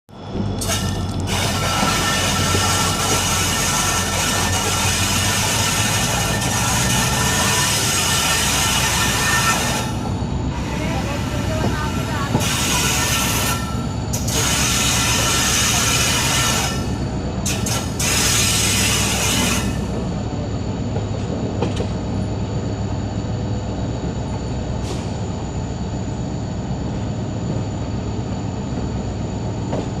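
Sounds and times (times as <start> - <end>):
diesel locomotive engine humming: 0.1 - 30.0.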